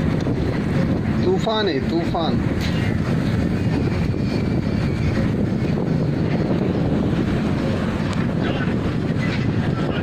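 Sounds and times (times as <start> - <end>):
strong wind buffeting microphone: 0.0 - 10.0.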